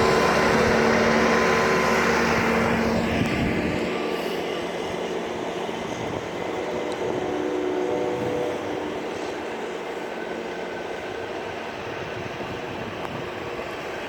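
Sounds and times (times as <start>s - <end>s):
train rumbling by: 0.0s - 14.0s.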